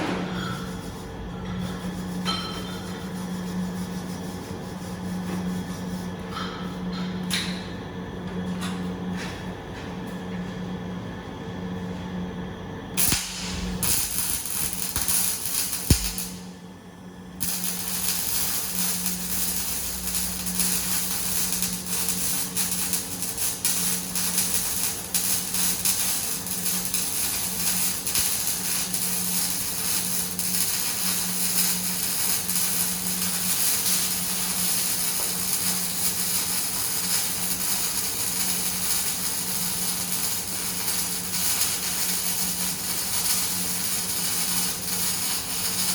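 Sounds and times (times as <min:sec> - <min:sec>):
welding arc crackling: 0:13.0 - 0:16.7, 0:17.3 - 0:45.9
low hum: 0:13.0 - 0:21.6.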